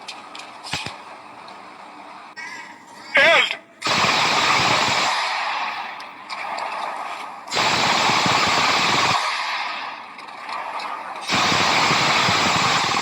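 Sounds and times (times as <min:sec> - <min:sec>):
automatic gunfire bursts: 0:03.8 - 0:06.0, 0:07.5 - 0:10.1, 0:11.2 - 0:13.0.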